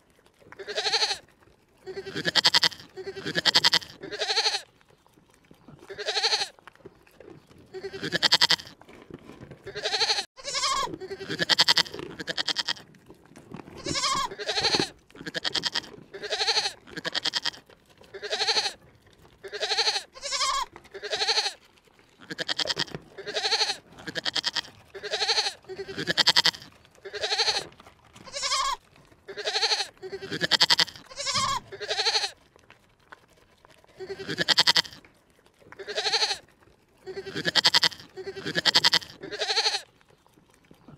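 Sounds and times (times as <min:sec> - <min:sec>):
livestock bleating: 0:00.5 - 0:01.2, 0:01.8 - 0:04.7, 0:05.9 - 0:06.6, 0:07.7 - 0:08.8, 0:09.7 - 0:12.8, 0:13.8 - 0:18.8, 0:19.4 - 0:21.6, 0:22.2 - 0:32.4, 0:34.0 - 0:35.0, 0:35.7 - 0:39.9.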